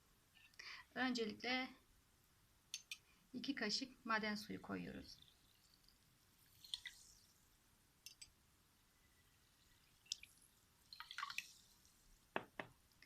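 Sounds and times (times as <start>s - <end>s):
faint water drips: 4.5s - 13.0s.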